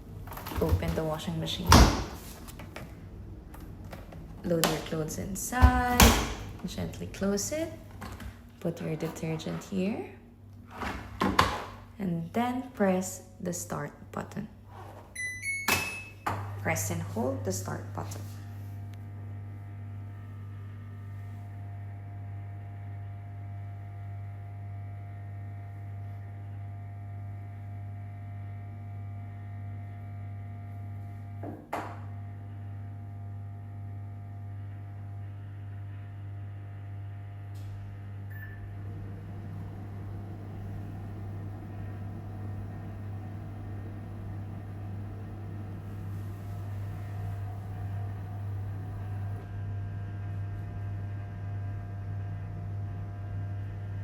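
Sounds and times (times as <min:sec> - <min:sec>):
washing machine electrical hum: 0:00.0 - 0:54.0
washing machine water rushing: 0:38.8 - 0:48.1.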